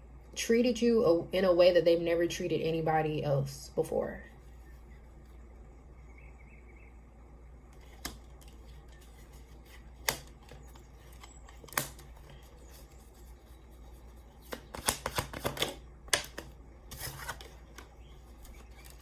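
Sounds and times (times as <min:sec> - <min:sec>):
deck of cards shuffling: 0:07.8 - 0:19.0.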